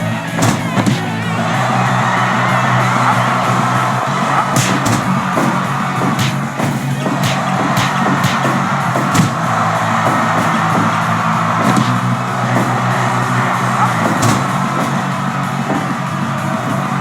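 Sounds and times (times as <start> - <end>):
short sharp knocks: 4.5 - 11.0, 11.6 - 12.0, 14.0 - 15.0.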